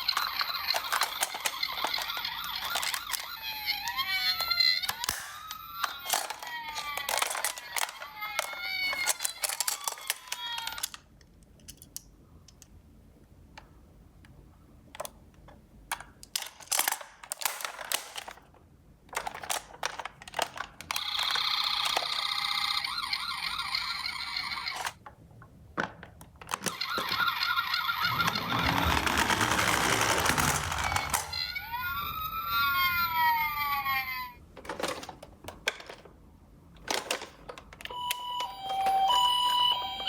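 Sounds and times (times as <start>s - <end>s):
plastic toy clicks and taps: 4.4s - 12.7s
toy electronic siren: 37.9s - 40.0s
wavering toy siren: 37.9s - 40.0s.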